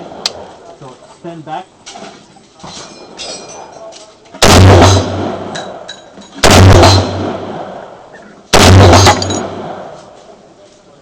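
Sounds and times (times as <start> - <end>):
rifle shots: 4.4 - 10.0.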